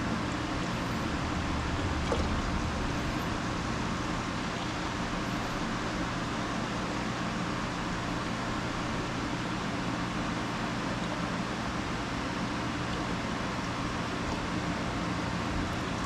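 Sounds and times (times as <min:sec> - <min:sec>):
mechanical hum: 0:00.0 - 0:16.0.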